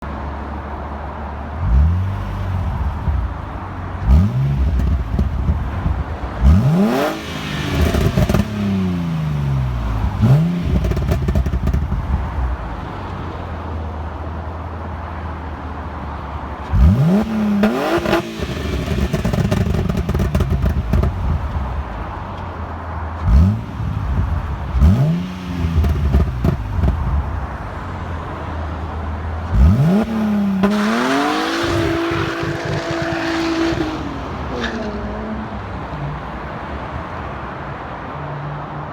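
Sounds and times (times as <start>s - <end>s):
car engine idling and revving: 0.0s - 38.9s
exhaust pops and crackles: 2.7s - 6.6s, 9.8s - 12.8s, 17.6s - 24.9s, 25.7s - 27.6s.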